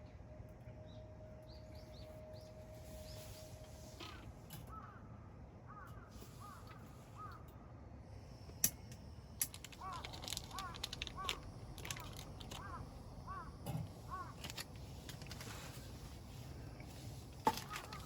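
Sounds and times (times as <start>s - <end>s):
bird calling: 5.7s - 7.5s, 9.7s - 18.0s.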